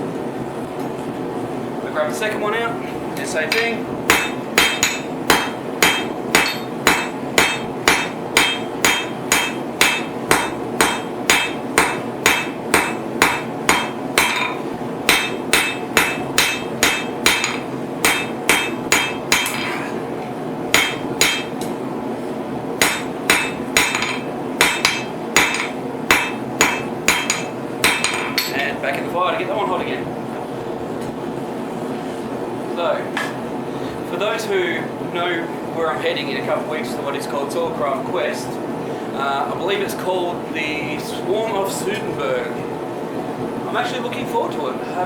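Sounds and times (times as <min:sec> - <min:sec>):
hammer striking steel on anvil: 0:03.5 - 0:19.7, 0:20.7 - 0:21.8, 0:22.8 - 0:28.7.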